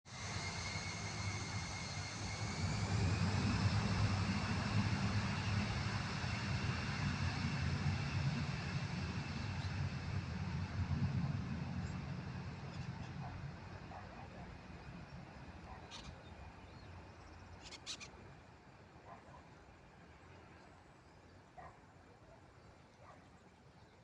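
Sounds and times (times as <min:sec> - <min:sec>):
jet engines rumbling and whining: 0:00.1 - 0:19.1.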